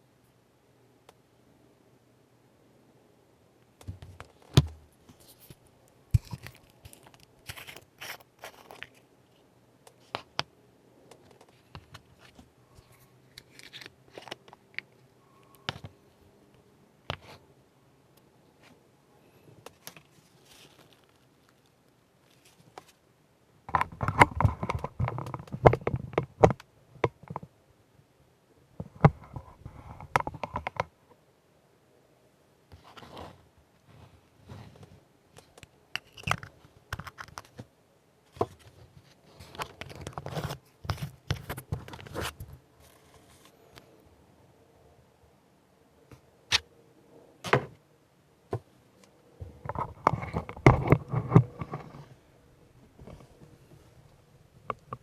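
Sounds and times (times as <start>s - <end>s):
rustling and rubbing: 4.1s - 10.3s, 19.7s - 23.0s, 32.7s - 35.0s, 38.3s - 43.7s.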